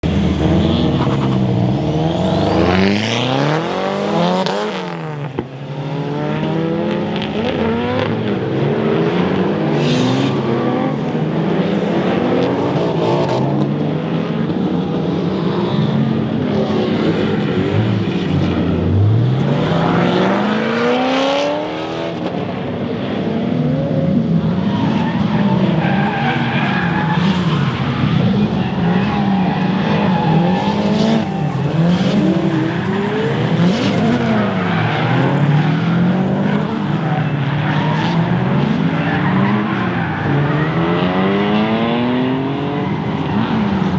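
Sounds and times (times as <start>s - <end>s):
tyres squealing and skidding: 0.0s - 5.2s, 9.6s - 10.9s, 24.6s - 43.9s
car engines revving hard: 0.0s - 43.9s.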